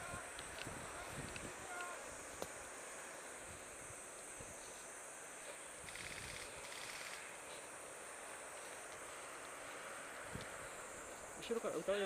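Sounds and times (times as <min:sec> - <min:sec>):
insect pulsing trill: 0:00.0 - 0:07.8
insects buzzing high-pitched: 0:00.0 - 0:12.0.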